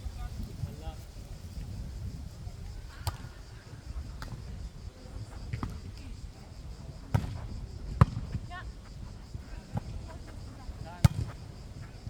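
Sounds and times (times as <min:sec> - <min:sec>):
wind buffeting microphone: 0:00.0 - 0:12.0
volleyball being hit: 0:03.0 - 0:03.4, 0:04.1 - 0:04.5, 0:07.0 - 0:08.4, 0:09.7 - 0:11.6.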